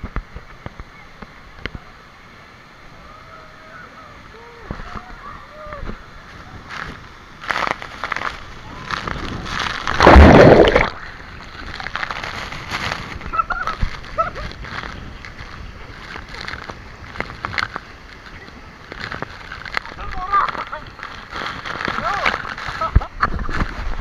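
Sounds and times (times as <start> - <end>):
water splashing and sloshing: 5.9 - 24.0
loud splash: 9.2 - 11.2.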